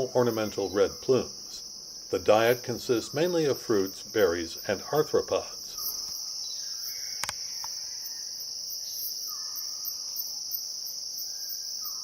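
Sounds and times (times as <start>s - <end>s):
insects droning: 0.0s - 12.0s
sharp click: 7.2s - 7.8s.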